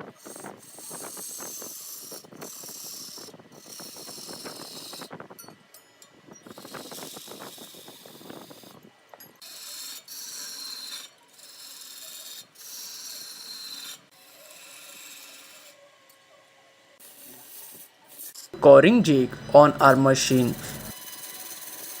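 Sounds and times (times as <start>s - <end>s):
tool rasping through wood: 0.0s - 5.1s, 6.4s - 8.8s, 9.4s - 15.8s, 20.3s - 22.0s.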